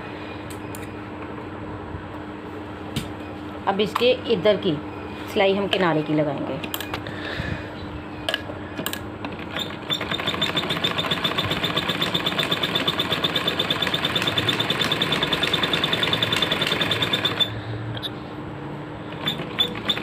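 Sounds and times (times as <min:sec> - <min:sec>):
sewing machine stitching: 0:09.3 - 0:17.5, 0:19.1 - 0:20.0.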